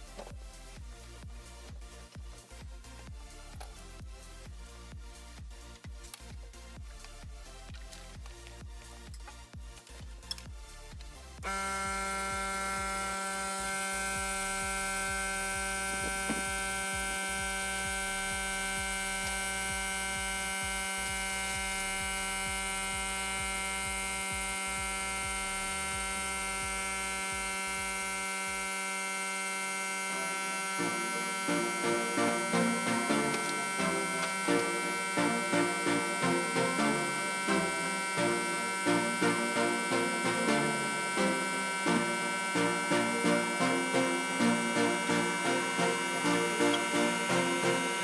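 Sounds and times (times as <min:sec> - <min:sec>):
steady electrical hum: 0:11.4 - 0:48.0.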